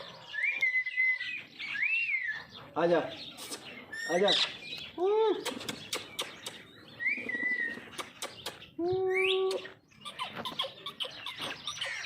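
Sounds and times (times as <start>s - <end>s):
sharp clicks: 4.7s - 6.7s, 7.9s - 8.6s
parrot calling: 9.2s - 12.0s.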